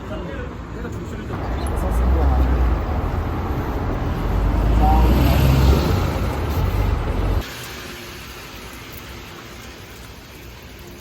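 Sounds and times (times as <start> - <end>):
passing traffic rumble: 1.1 - 7.4
steady hiss: 7.4 - 11.0.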